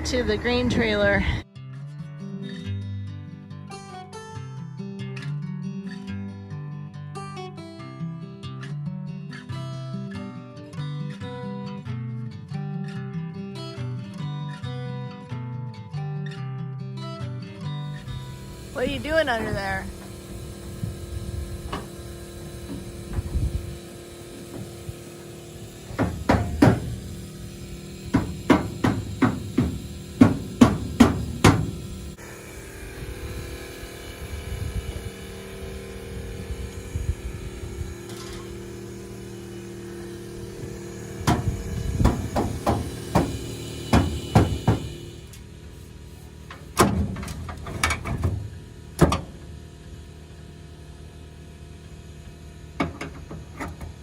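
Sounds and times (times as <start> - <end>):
steady low hum: 17.8 - 54.0
hammer blows: 18.0 - 32.2, 40.2 - 45.4.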